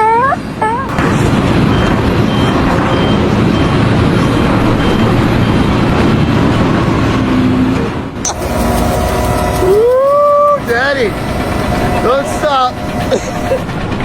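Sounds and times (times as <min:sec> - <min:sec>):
heavy vehicle engine running: 0:00.5 - 0:14.0
faint reversing alarm beeping: 0:01.0 - 0:06.1, 0:08.3 - 0:13.8.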